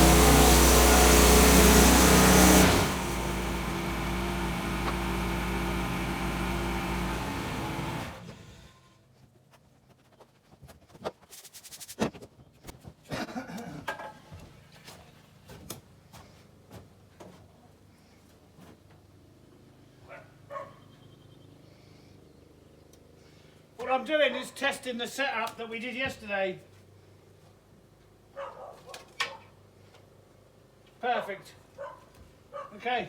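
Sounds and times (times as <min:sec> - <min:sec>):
engine running: 0:00.0 - 0:08.9.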